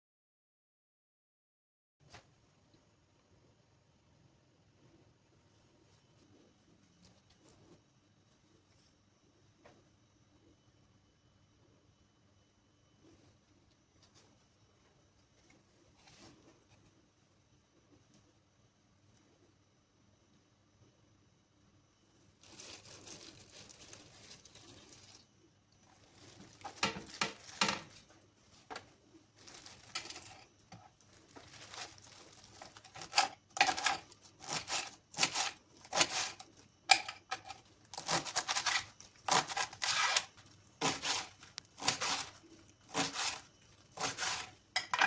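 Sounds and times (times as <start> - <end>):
ripping or cutting greens: 22.4 - 25.2, 31.1 - 36.4, 37.3 - 44.6
greens rustling: 22.4 - 25.3, 25.9 - 28.7, 29.3 - 30.4.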